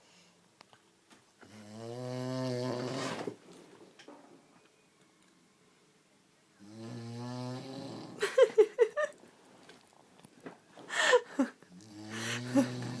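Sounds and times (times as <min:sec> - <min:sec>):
man snoring: 0:01.6 - 0:03.0, 0:06.6 - 0:08.2, 0:11.8 - 0:13.0.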